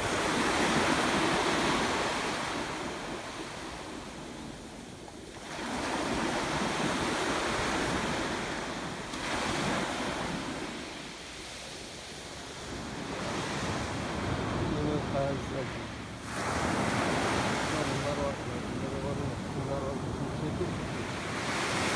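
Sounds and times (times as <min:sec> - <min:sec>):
wind on microphone: 0:00.0 - 0:10.8
sea waves washing ashore: 0:00.0 - 0:21.9.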